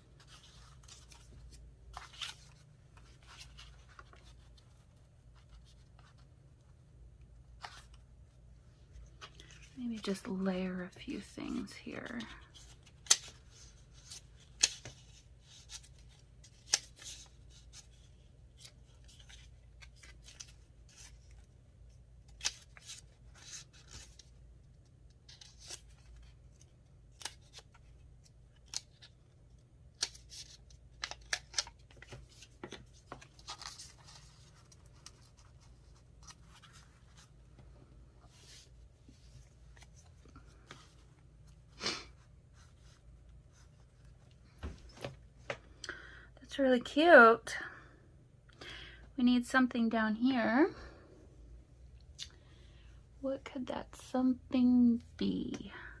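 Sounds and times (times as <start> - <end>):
paper rustling: 30.0 - 45.6.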